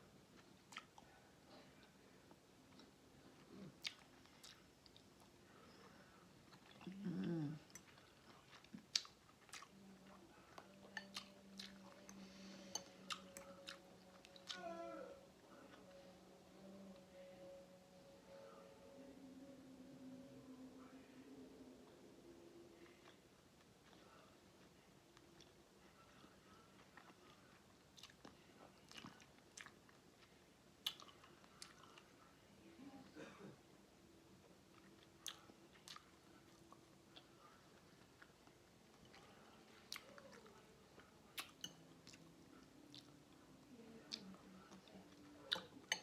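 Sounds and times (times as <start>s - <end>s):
faint steady hum: 0.0s - 46.0s
chewing with wet lip smacks: 6.5s - 9.8s, 26.8s - 32.1s, 34.7s - 43.2s.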